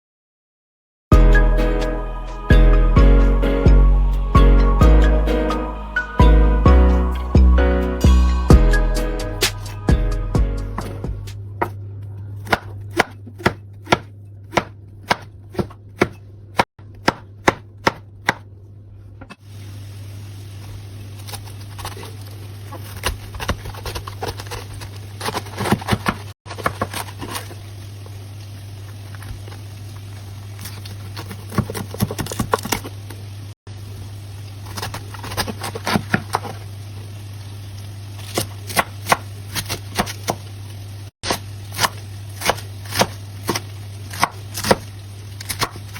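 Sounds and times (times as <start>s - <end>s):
knife chopping on cutting board: 12.4s - 18.5s, 22.7s - 27.3s, 34.8s - 36.6s, 38.2s - 40.4s, 41.2s - 45.9s.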